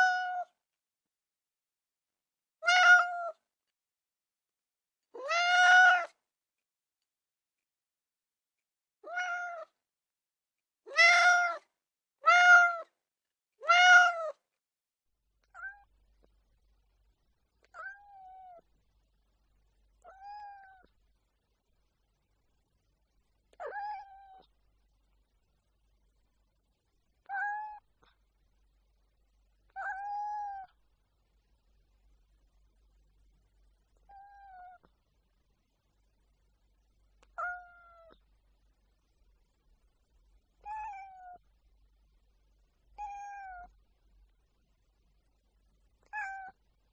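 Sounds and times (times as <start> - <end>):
cat meowing: 0.0 - 0.6, 2.6 - 3.4, 5.2 - 6.2, 9.0 - 9.8, 10.9 - 12.9, 13.6 - 14.4, 15.4 - 15.9, 17.7 - 18.6, 20.0 - 20.9, 23.5 - 24.5, 27.2 - 27.9, 29.7 - 30.8, 34.0 - 34.9, 37.3 - 38.2, 40.6 - 41.4, 43.0 - 43.7, 46.0 - 46.6.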